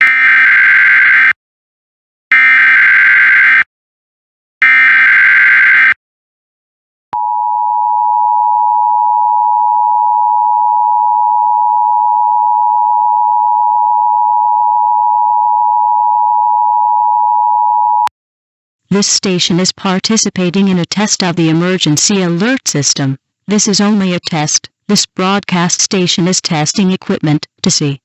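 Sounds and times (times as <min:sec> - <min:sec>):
steady single-pitch attention tone: 0:07.2 - 0:18.1.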